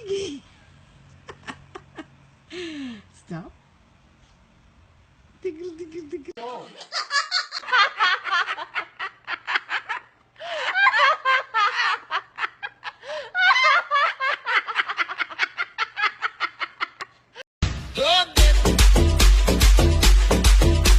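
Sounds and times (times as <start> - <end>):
electronic dance music: 17.7 - 20.9.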